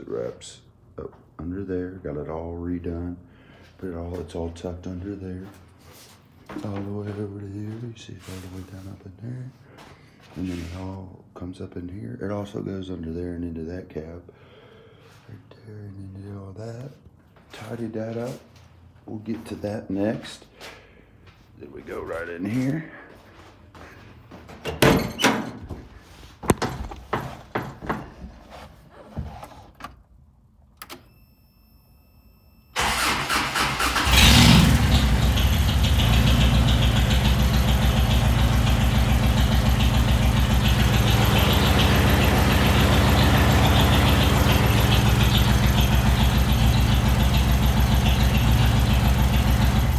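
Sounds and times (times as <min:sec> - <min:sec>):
truck engine starting and idling: 0:32.8 - 0:49.9.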